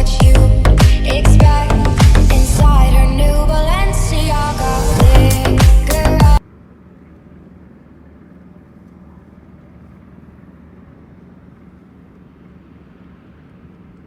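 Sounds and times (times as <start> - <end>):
background music: 0.0 - 6.4
low rumble with hum: 0.0 - 14.0.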